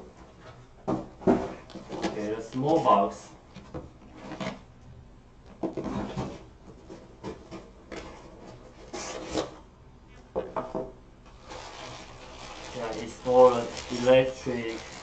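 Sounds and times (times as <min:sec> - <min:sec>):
cardboard scraping and rustling: 0:01.3 - 0:03.0, 0:04.0 - 0:04.6, 0:05.7 - 0:09.6, 0:11.3 - 0:15.0.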